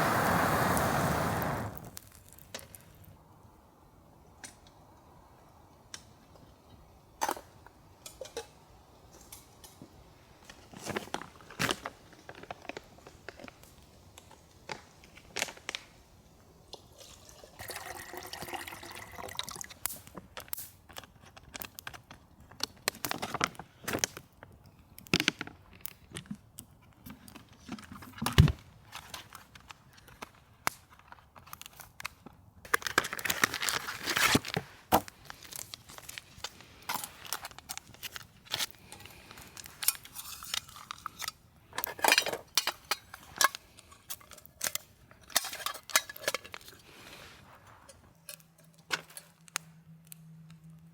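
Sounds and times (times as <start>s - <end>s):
liquid pouring: 17.0s - 19.8s.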